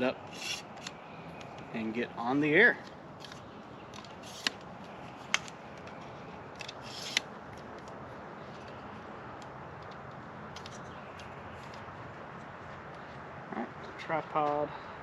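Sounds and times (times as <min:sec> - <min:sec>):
rustle: 0:00.0 - 0:09.1.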